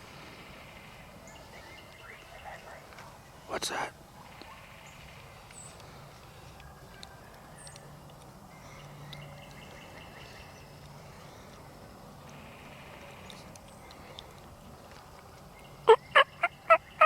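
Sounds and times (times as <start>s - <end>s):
woodland background: 0.0s - 17.0s
wild turkey calls: 15.8s - 17.0s.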